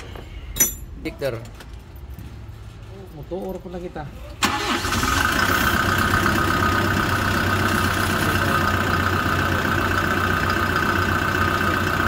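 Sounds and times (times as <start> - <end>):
diesel engine idling: 4.4 - 12.0.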